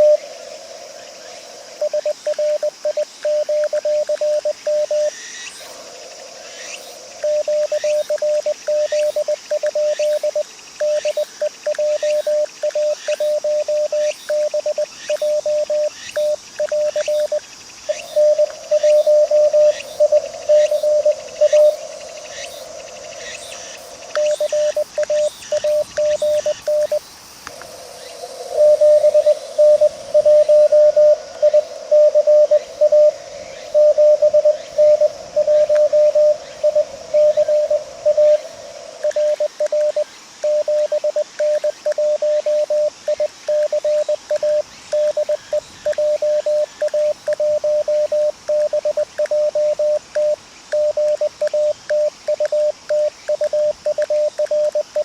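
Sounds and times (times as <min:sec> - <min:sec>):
receiver hiss: 0:00.0 - 0:55.0
morse code tone: 0:24.2 - 0:27.0, 0:28.6 - 0:55.0.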